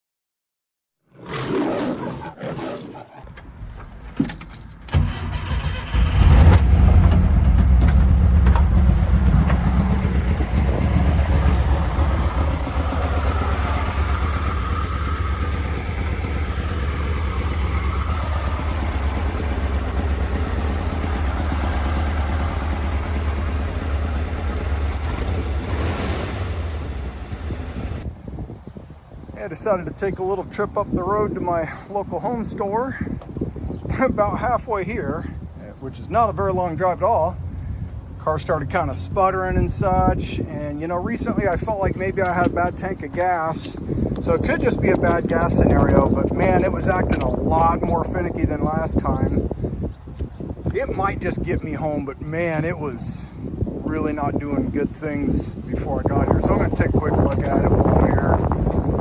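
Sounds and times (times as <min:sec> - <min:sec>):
engine clicks and knocks: 0:03.4 - 0:28.0, 0:42.0 - 0:44.2, 0:47.0 - 0:47.5, 0:56.4 - 0:59.0
car engine running: 0:04.9 - 0:28.1.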